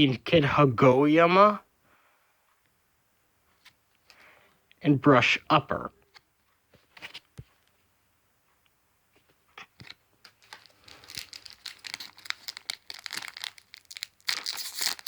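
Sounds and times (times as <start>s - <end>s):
foil wrapper crinkling and tearing: 10.2s - 15.0s.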